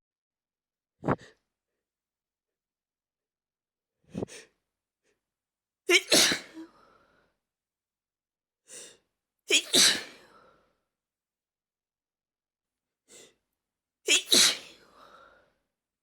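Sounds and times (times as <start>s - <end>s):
person sneezing: 5.9s - 6.6s, 9.5s - 10.2s, 14.1s - 14.8s.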